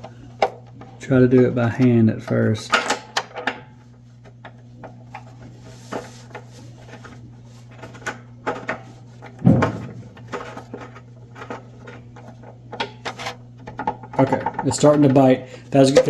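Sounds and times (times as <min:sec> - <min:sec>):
steady low hum: 0:00.0 - 0:16.0
loud knock: 0:09.4 - 0:10.3.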